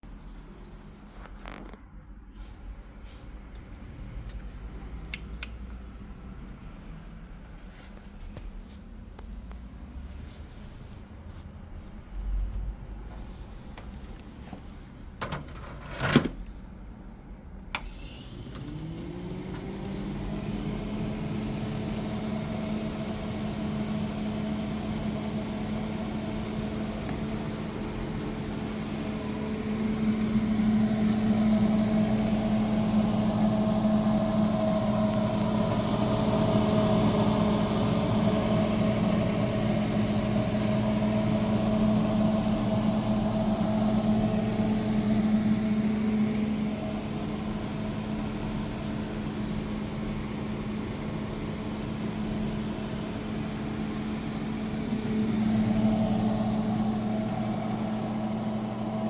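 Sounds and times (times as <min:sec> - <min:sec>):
refrigerator compressor humming: 0:22.4 - 0:59.0.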